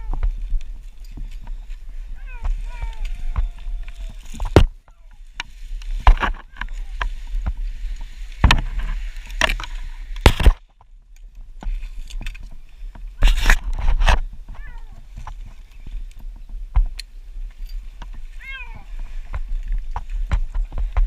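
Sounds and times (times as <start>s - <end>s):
sharp knocks and scrapes: 2.4s - 10.8s, 11.5s - 15.6s.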